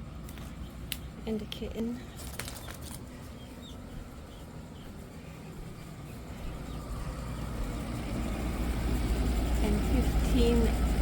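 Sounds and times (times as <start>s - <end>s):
chicks peeping: 1.9s - 10.8s
low rumble: 3.0s - 11.0s.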